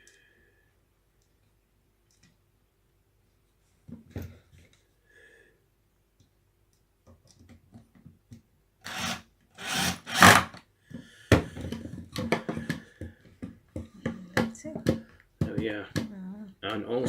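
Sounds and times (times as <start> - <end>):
rasping strokes on wood: 8.9 - 10.5.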